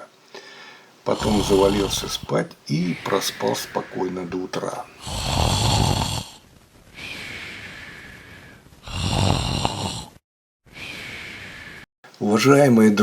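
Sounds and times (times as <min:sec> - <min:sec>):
soft hissing breaths: 0:00.2 - 0:11.9
person snoring: 0:01.1 - 0:06.4, 0:07.0 - 0:11.9.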